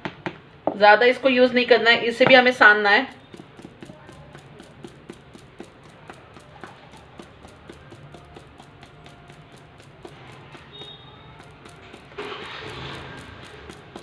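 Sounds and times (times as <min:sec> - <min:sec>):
hands kneading dough: 0:03.0 - 0:14.0.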